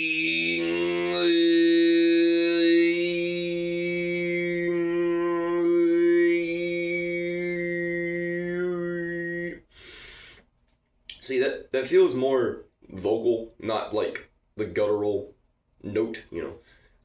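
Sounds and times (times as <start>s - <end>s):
man throat singing: 0.0s - 9.7s
short breath: 9.7s - 10.5s, 16.6s - 17.0s.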